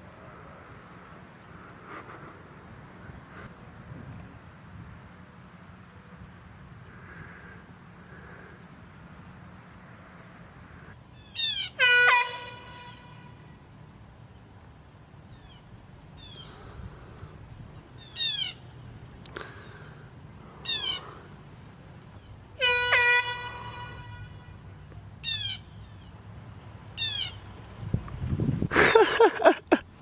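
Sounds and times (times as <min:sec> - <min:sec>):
air horn blasts: 0:11.7 - 0:13.7, 0:22.6 - 0:24.7.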